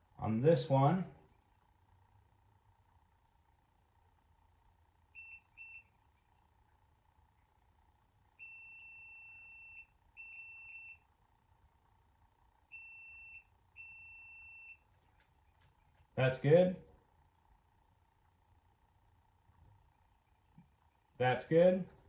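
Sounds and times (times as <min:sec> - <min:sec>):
multimeter beeping: 0:05.1 - 0:06.1, 0:08.4 - 0:11.1, 0:12.7 - 0:14.9.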